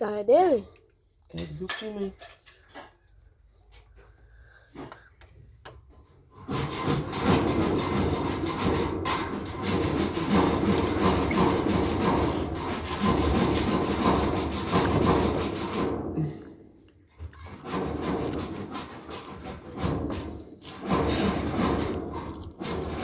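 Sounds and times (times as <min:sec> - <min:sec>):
hand saw cutting: 0:06.4 - 0:16.4, 0:17.4 - 0:23.0.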